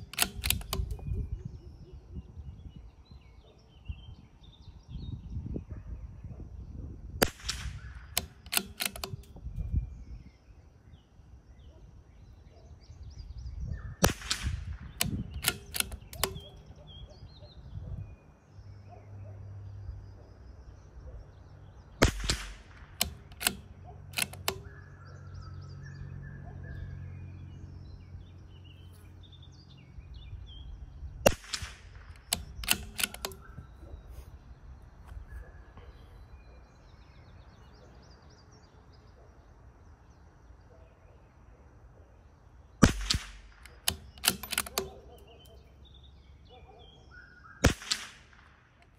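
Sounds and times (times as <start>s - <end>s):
rifle bolt clicks: 0.0s - 1.2s, 7.2s - 9.7s, 14.3s - 16.7s, 22.0s - 24.8s, 31.3s - 33.7s, 42.8s - 45.6s
rifle shots: 7.2s - 9.3s, 14.0s - 16.6s, 22.0s - 24.8s, 31.2s - 33.5s, 42.8s - 45.1s, 47.6s - 48.9s.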